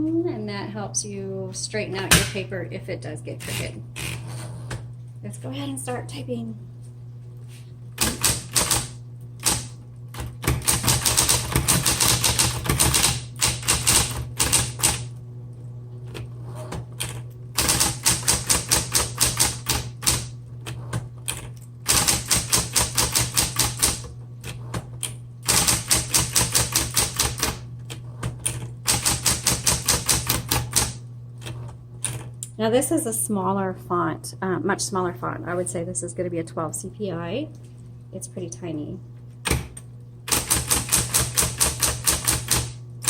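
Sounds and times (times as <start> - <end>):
typewriter motor hum: 3.3 - 4.9, 7.9 - 15.2, 16.0 - 32.5, 39.4 - 43.0
typewriter keys striking: 8.0 - 9.7, 10.4 - 15.0, 17.6 - 20.3, 21.3 - 24.0, 25.5 - 27.6, 28.4 - 31.0, 40.3 - 42.8.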